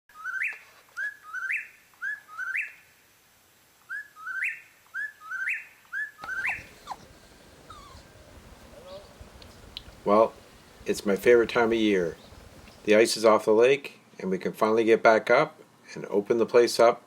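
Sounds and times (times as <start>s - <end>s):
bird chirping: 6.2s - 13.1s.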